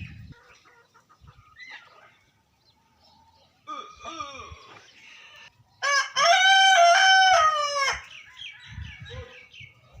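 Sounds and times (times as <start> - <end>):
rooster crowing: 5.8 - 8.1.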